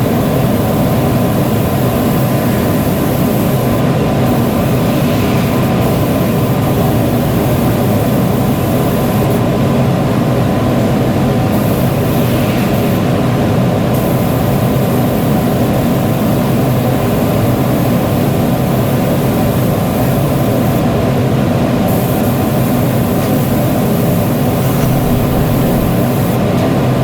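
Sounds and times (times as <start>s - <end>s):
loud machine noise: 0.0s - 26.8s.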